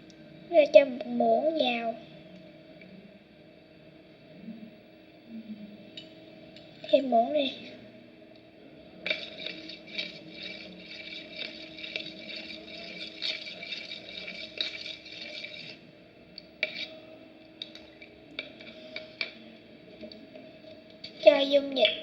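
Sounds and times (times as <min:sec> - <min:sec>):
spoon scraping in a container: 0:09.0 - 0:15.8, 0:16.6 - 0:17.0.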